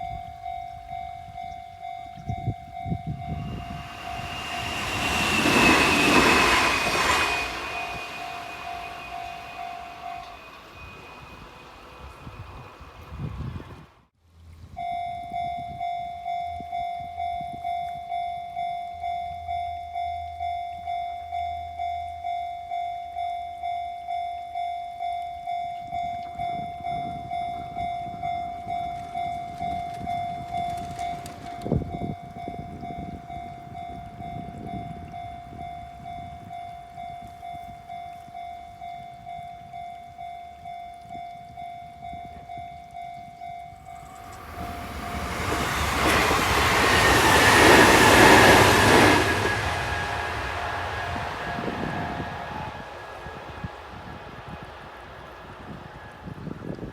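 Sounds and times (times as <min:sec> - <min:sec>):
level-crossing warning bell: 0:00.0 - 0:13.6, 0:14.7 - 0:56.9
train rumbling and clattering: 0:00.0 - 0:14.1, 0:26.2 - 0:40.2, 0:42.0 - 0:56.9.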